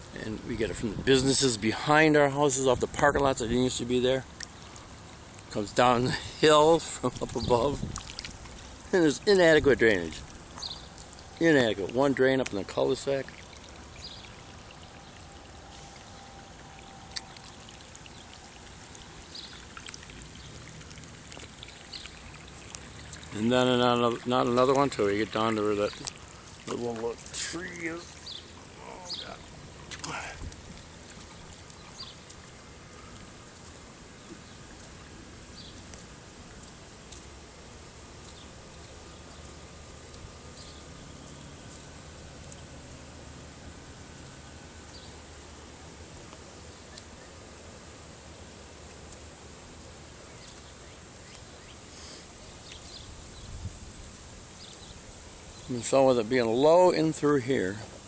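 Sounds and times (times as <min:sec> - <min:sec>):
outdoor hiss: 0:00.0 - 0:58.0
stormwater flowing: 0:00.0 - 0:58.0
bird chirps: 0:10.5 - 0:11.4, 0:13.8 - 0:19.7.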